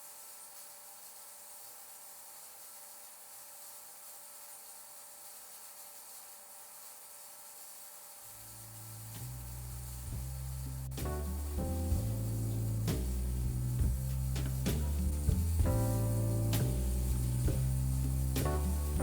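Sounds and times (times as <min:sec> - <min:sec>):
cleaning machine high hiss: 0:00.0 - 0:19.0
background music: 0:10.6 - 0:19.0.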